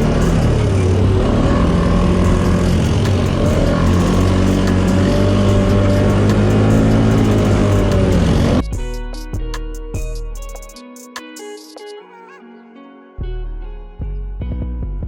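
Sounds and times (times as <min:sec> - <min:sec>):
atv engines running: 0:00.0 - 0:08.6.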